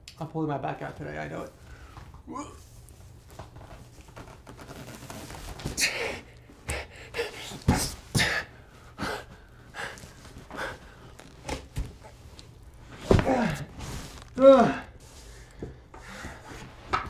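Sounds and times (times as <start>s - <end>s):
man panting heavily: 5.8s - 11.0s.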